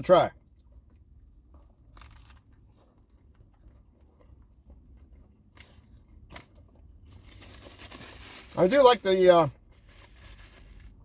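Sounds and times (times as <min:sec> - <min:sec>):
person chewing food: 0:00.4 - 0:07.2
food crunching: 0:00.4 - 0:07.6.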